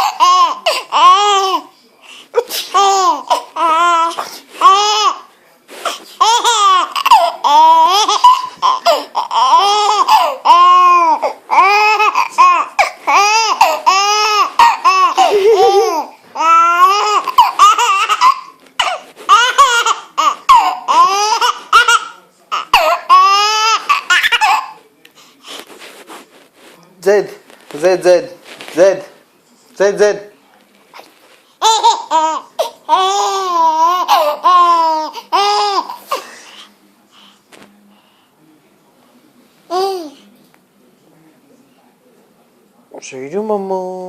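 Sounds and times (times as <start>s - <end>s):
baby laughing: 0.0s - 1.7s, 6.2s - 24.8s, 31.6s - 36.2s.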